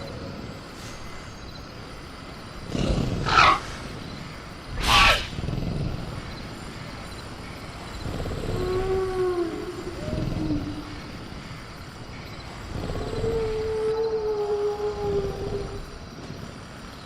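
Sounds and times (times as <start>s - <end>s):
background ambience: 0.0s - 17.0s
dinosaur shrieks: 4.8s - 5.4s.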